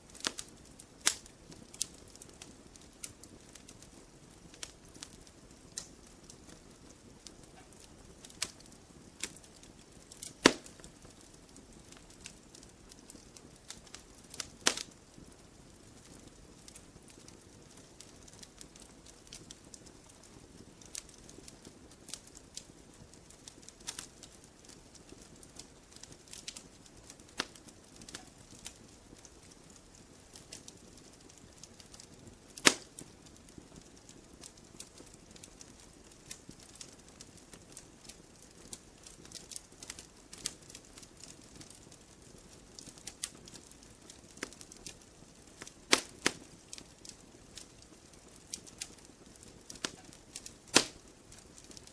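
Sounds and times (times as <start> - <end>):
campfire crackling and popping: 0.0 - 51.9
hiss of flame: 45.6 - 47.6, 48.4 - 51.9.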